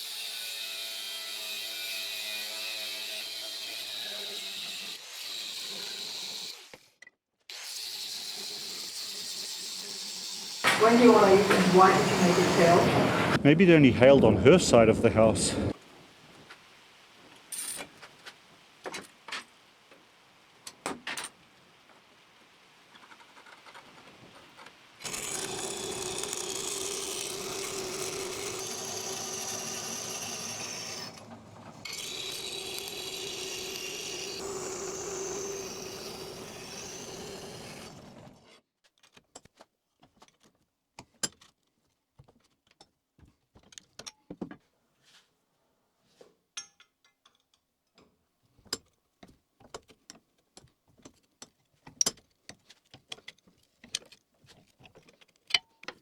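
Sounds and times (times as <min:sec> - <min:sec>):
power tool running: 0:10.5 - 0:13.4, 0:25.0 - 0:38.4.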